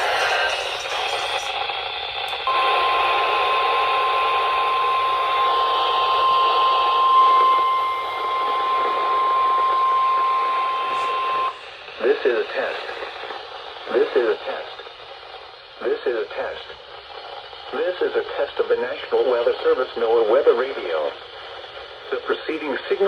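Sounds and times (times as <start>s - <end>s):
radio receiver hiss: 0.0s - 23.0s
steady warning alarm tone: 2.4s - 11.8s.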